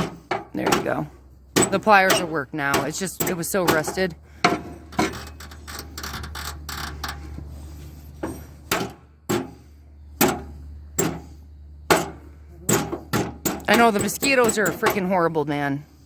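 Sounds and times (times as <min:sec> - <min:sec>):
hand tools clinking on metal: 0:00.0 - 0:07.3, 0:10.2 - 0:15.5.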